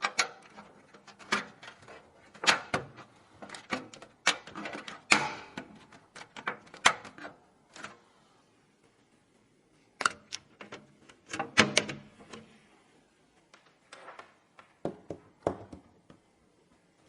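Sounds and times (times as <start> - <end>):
computer parts clicking and knocking: 0.0 - 7.9, 10.0 - 12.5.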